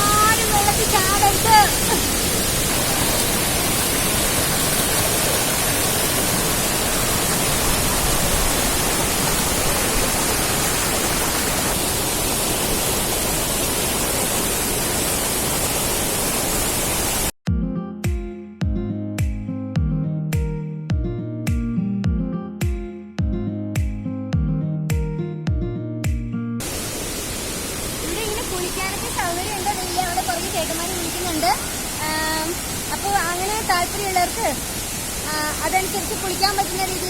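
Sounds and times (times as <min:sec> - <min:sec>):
waterfall roaring: 0:00.0 - 0:17.3, 0:26.6 - 0:37.0
plucked guitar music: 0:17.5 - 0:26.6.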